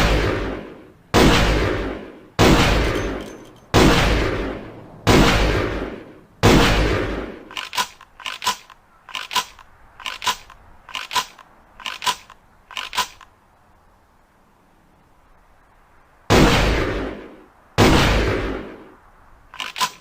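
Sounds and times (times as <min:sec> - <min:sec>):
pump-action shotgun clicks: 0:07.5 - 0:13.3, 0:19.5 - 0:20.0.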